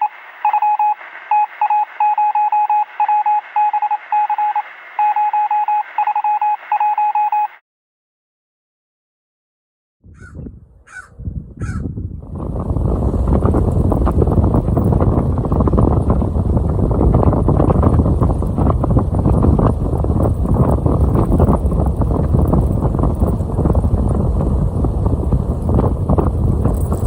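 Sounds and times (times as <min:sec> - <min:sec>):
morse code beeps: 0:00.0 - 0:07.6
wind buffeting microphone: 0:10.0 - 0:27.0.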